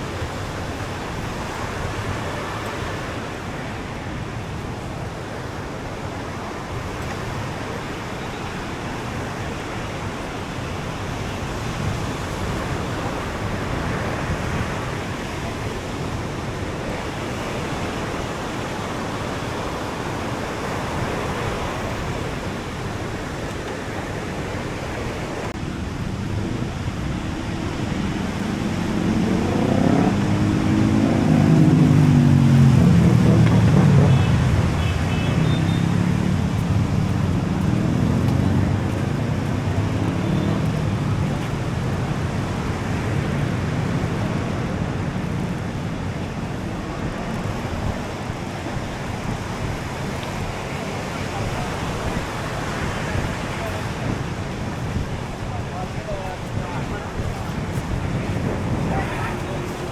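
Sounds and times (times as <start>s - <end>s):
ocean surf: 0.0s - 59.9s
wind: 0.0s - 59.9s
engine passing by: 26.4s - 47.1s, 56.6s - 59.9s.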